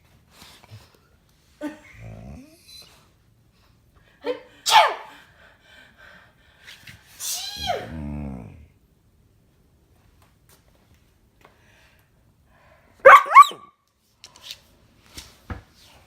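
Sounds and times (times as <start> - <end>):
person sneezing: 4.6 - 5.1.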